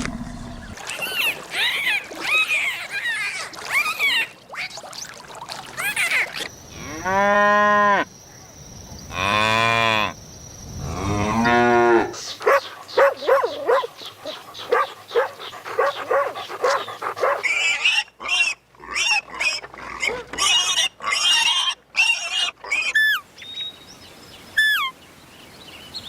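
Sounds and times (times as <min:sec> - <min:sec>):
cattle mooing: 0:10.8 - 0:12.2.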